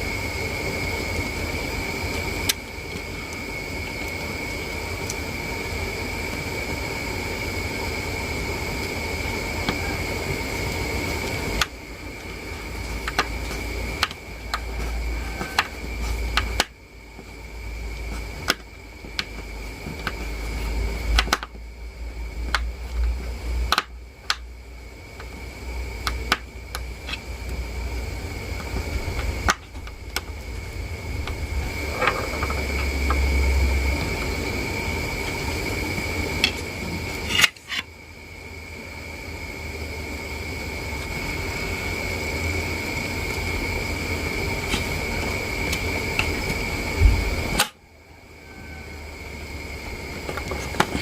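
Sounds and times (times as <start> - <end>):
constant high whine: 0.0 - 51.0
steady hum: 0.0 - 51.0
small parts clicking and tapping: 12.9 - 16.8, 21.1 - 21.6, 22.4 - 24.5.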